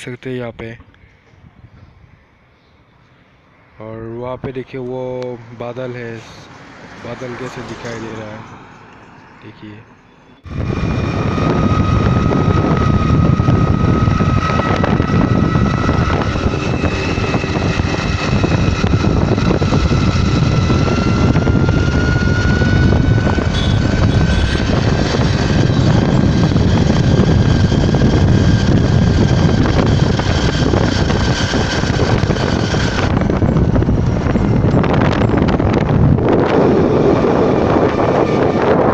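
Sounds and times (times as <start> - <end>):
road vehicle rumbling: 0.8 - 38.9
high whine rising in pitch: 10.2 - 38.9.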